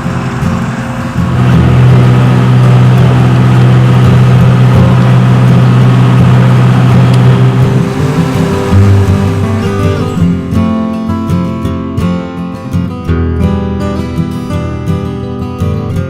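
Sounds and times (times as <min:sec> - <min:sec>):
tractor engine running: 0:00.0 - 0:11.9.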